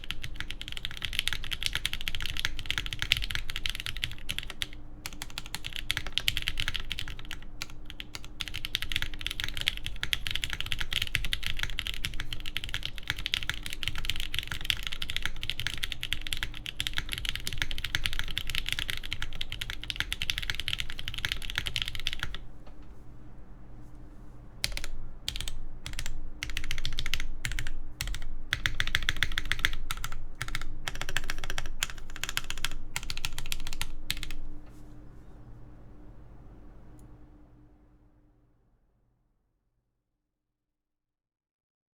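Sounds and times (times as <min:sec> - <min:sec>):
mechanical keyboard typing: 0:00.0 - 0:22.4, 0:24.6 - 0:34.5.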